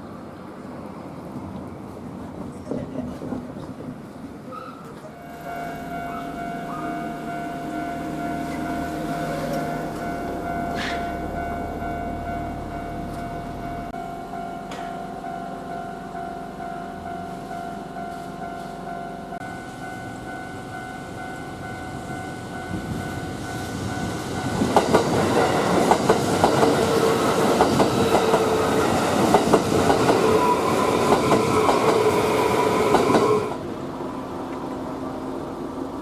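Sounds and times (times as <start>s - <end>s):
electric train passing: 0.0s - 36.0s
level crossing warning bell: 5.1s - 32.4s
train wheels clacking over rail joints: 23.8s - 33.6s.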